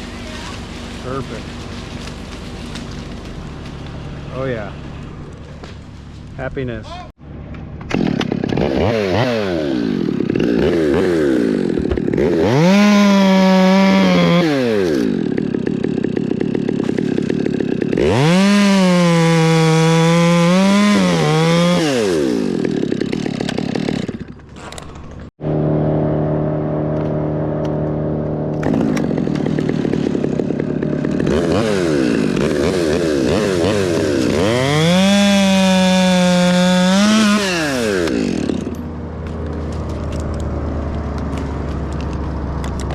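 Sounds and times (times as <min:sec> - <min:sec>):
chainsaw revving and idling: 0:07.9 - 0:42.9.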